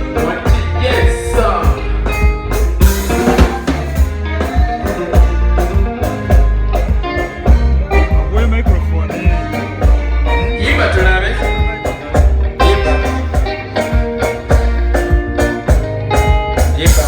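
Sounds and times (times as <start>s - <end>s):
heavy bass line: 0.0s - 17.0s
live band playing: 0.0s - 17.0s.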